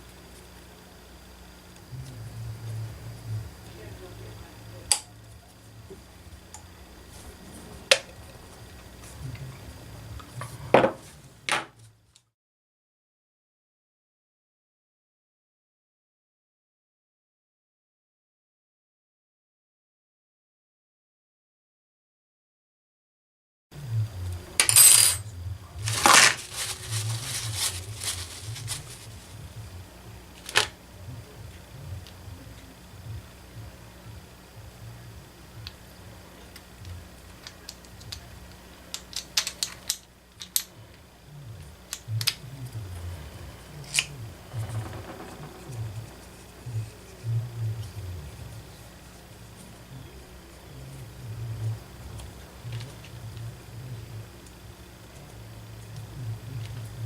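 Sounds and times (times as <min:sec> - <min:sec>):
metal parts clinking on workbench: 0:24.6 - 0:25.2.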